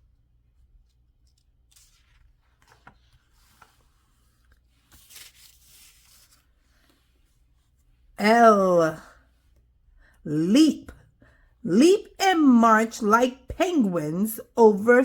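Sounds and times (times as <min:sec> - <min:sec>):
book pages rustling: 0:00.6 - 0:07.9.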